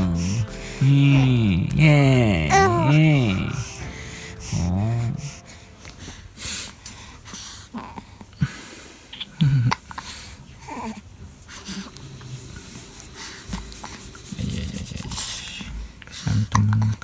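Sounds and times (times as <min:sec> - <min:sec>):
baby breathy noises: 0:02.4 - 0:05.8.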